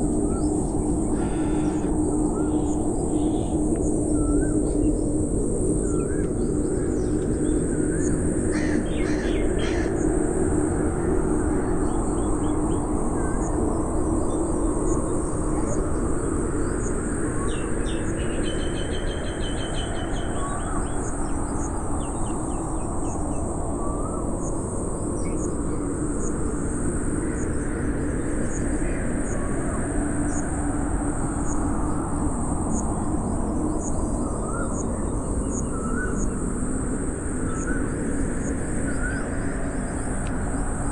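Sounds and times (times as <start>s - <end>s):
high-pitched drone: 0.0s - 12.5s
birds chirping and calling: 0.7s - 4.9s, 8.6s - 10.0s.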